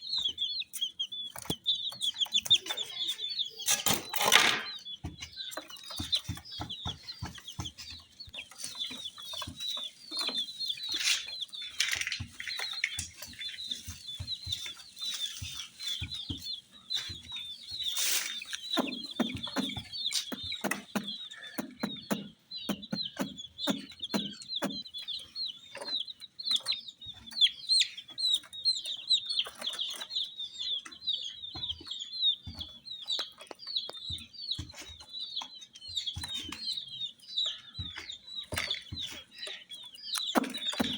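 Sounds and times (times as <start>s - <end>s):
baby chicks peeping: 0.0s - 40.9s
clicks and taps: 3.7s - 26.0s.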